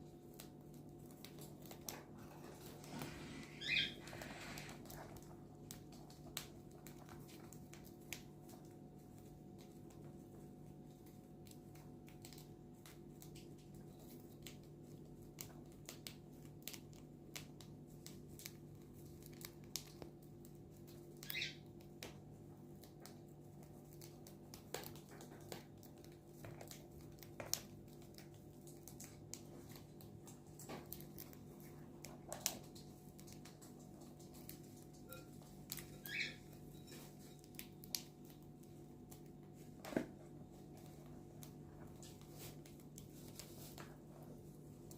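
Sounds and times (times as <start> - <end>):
bird clicks and rustling: 0.1 - 44.0
soft bird chirps: 2.8 - 4.7, 21.2 - 21.7, 35.1 - 37.0.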